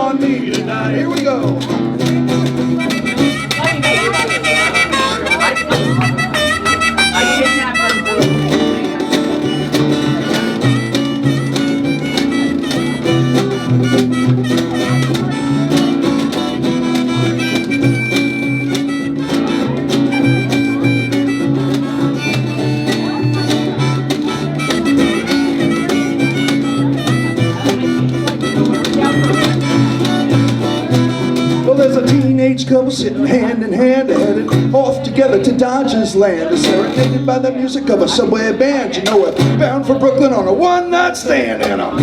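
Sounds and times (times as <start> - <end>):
bass line: 0.0 - 38.4
guitar: 0.0 - 42.0
drums: 0.4 - 32.6
harmonica: 2.3 - 32.2.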